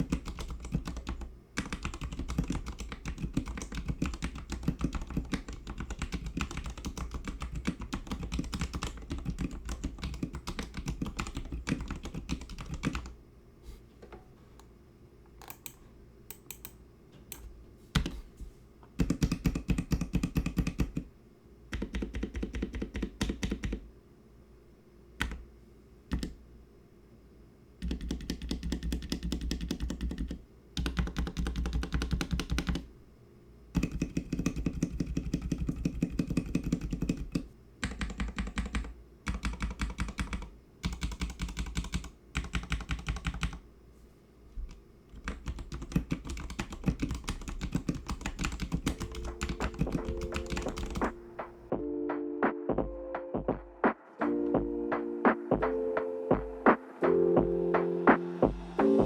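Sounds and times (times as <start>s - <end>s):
mechanical keyboard typing: 0.0s - 13.2s, 19.0s - 21.1s, 21.7s - 23.8s, 25.2s - 25.4s, 26.1s - 26.4s, 27.8s - 32.9s, 33.8s - 43.6s, 44.7s - 51.7s
soft music: 48.9s - 59.0s.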